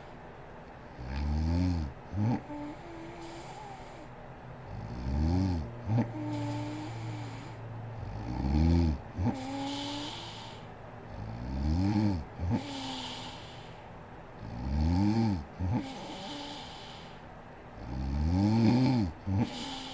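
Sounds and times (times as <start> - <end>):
woman snoring: 1.0 - 4.1, 4.7 - 13.8, 14.4 - 17.2, 17.8 - 19.9
humming breath out: 5.6 - 14.0, 15.7 - 17.3, 18.7 - 19.9.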